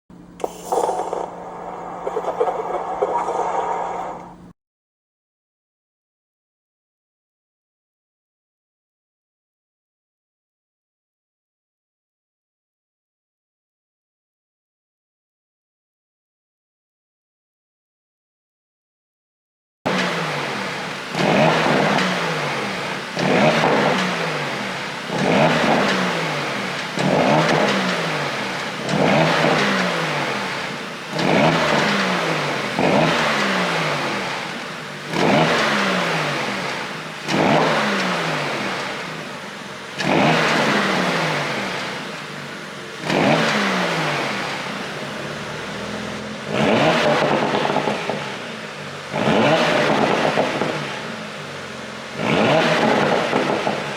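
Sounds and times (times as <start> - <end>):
car engine revving: 0.4 - 4.5, 19.9 - 53.9.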